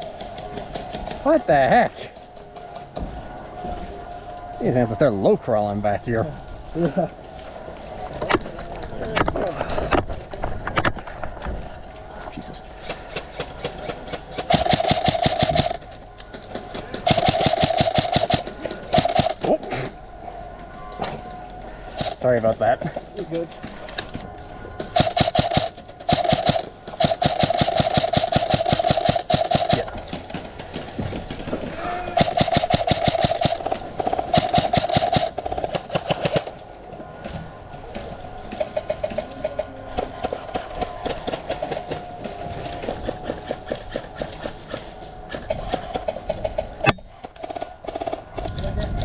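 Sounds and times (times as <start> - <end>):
steady motor whine: 2.9 - 38.6, 39.2 - 49.0
airsoft guns firing full auto: 12.8 - 19.5, 22.0 - 22.3, 24.8 - 31.5, 32.1 - 36.6.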